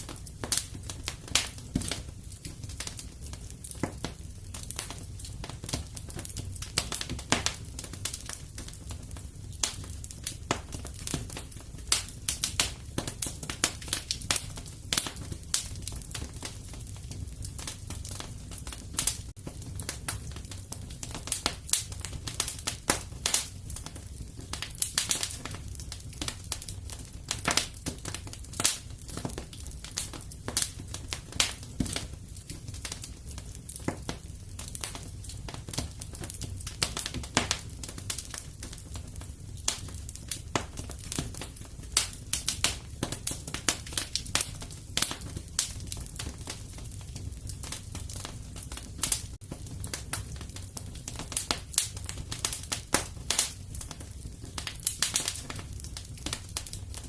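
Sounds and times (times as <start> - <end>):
low rumble of flame: 0.0 - 57.0
wood fire crackling and popping: 0.0 - 57.0.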